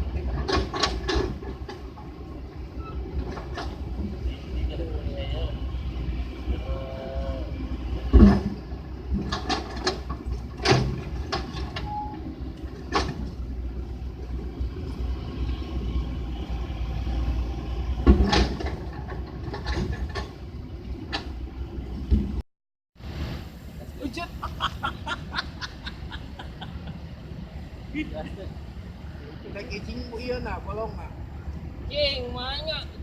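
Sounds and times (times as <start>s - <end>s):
heavy truck engine running: 0.0s - 22.4s.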